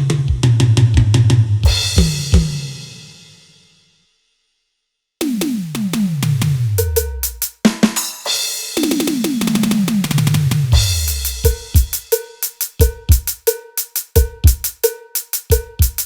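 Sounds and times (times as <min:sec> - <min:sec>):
sharp electronic drum strokes: 0:08.4 - 0:16.0.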